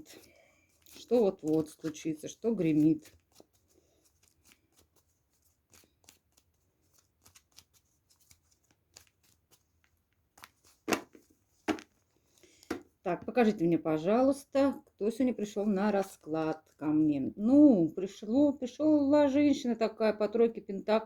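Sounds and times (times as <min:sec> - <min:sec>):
cards being shuffled: 0:00.0 - 0:13.0
cards snapping: 0:10.4 - 0:11.9.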